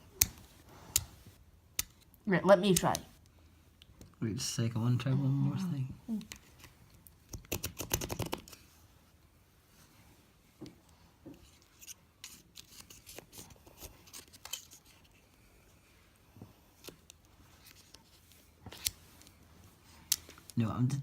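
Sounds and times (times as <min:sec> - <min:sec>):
flip phone clicks and scrapes: 0:11.4 - 0:15.0.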